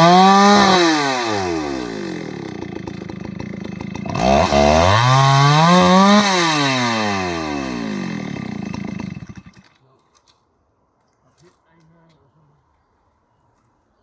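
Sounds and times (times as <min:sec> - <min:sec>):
chainsaw engine revving: 0:00.0 - 0:09.8.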